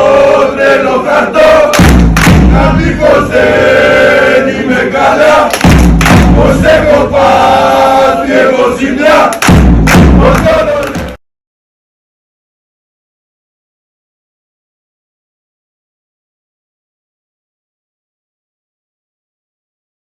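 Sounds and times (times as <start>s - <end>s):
group chanting in unison: 0.0s - 11.2s
low thud: 1.8s - 3.0s, 5.6s - 7.0s, 9.4s - 10.4s.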